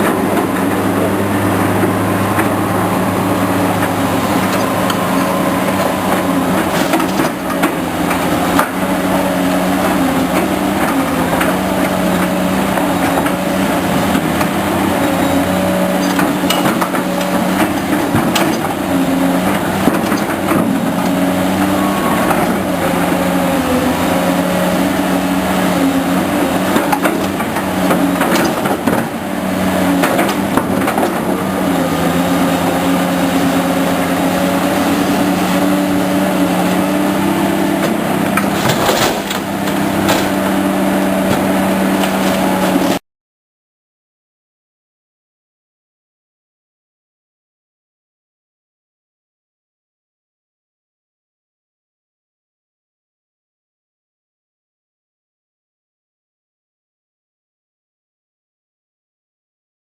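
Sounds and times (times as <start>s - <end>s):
diesel engines running: 0.0s - 43.0s
clanks and knocks: 37.8s - 40.6s.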